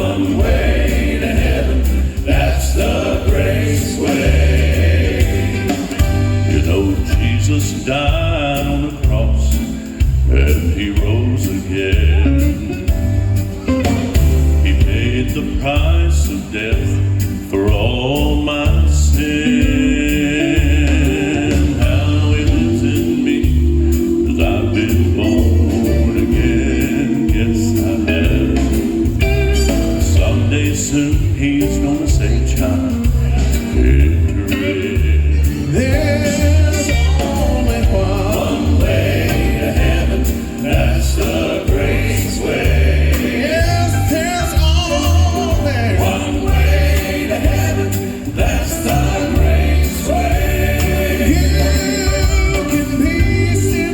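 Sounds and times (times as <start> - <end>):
gospel quartet singing: 0.0 - 53.9
pulsing bass line: 18.7 - 53.9.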